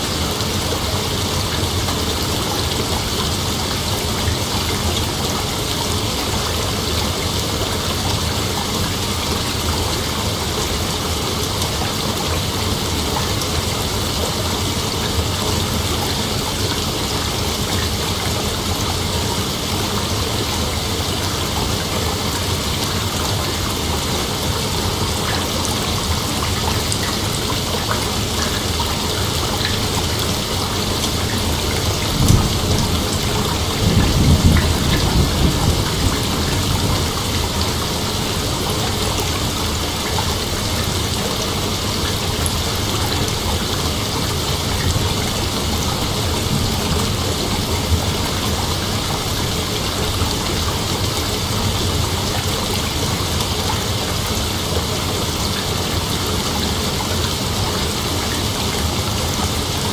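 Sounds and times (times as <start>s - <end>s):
hiss of falling water: 0.0s - 59.9s
low rumble of thunder: 28.3s - 40.8s.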